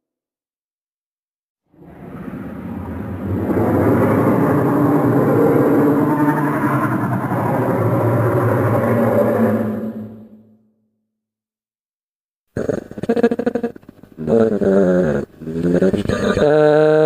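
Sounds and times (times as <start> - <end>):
long rough low creature call: 1.8 - 10.5.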